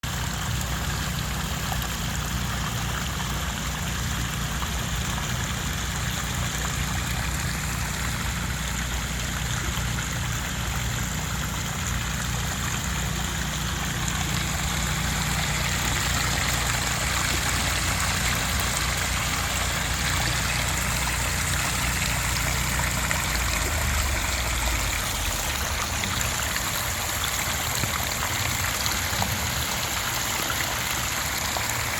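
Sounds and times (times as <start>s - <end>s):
water splashing over rocks: 0.0s - 31.9s
low rumble: 19.4s - 27.4s.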